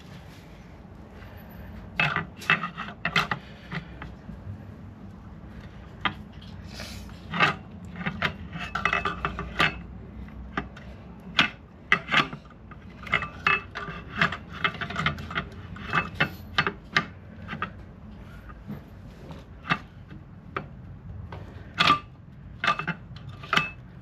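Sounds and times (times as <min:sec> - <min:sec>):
metal clutch parts clinking: 0:07.2 - 0:24.0.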